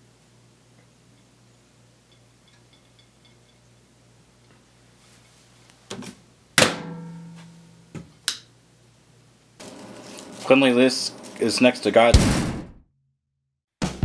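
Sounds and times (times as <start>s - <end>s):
knock and loud thunk: 12.1s - 12.8s.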